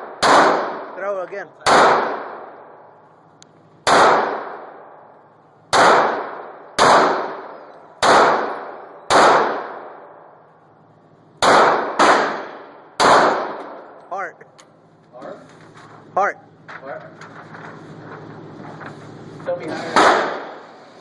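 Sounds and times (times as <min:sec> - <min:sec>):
pistol shots echoing: 0:00.0 - 0:03.0, 0:03.8 - 0:05.1, 0:05.7 - 0:10.4, 0:11.4 - 0:14.1, 0:19.9 - 0:20.8.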